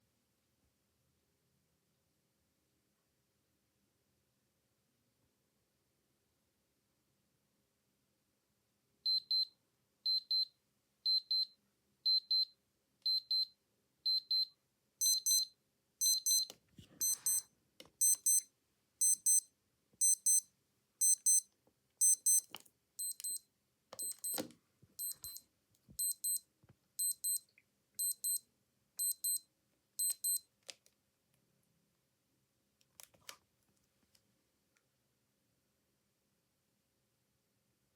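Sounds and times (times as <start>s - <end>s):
harsh watch alarm beep: 14.1s - 23.4s, 24.0s - 24.4s, 25.0s - 25.4s, 26.0s - 26.4s, 27.0s - 28.4s, 29.0s - 29.4s, 30.0s - 30.4s
thin high watch beep: 14.2s - 23.4s, 24.0s - 24.4s, 25.0s - 25.4s, 26.0s - 26.4s, 27.0s - 28.4s, 29.0s - 29.4s, 30.0s - 30.4s.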